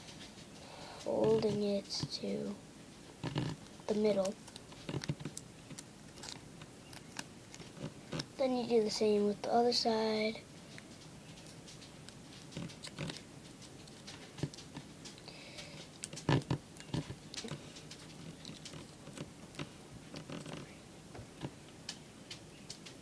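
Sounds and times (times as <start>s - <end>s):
paper folding and crinkling: 3.2s - 8.3s.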